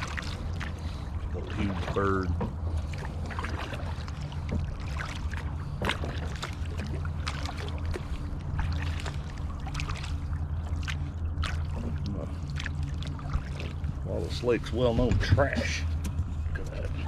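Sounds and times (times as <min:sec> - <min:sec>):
paddle water splashing and dripping: 0:00.0 - 0:17.0
steady low hum: 0:00.0 - 0:17.0.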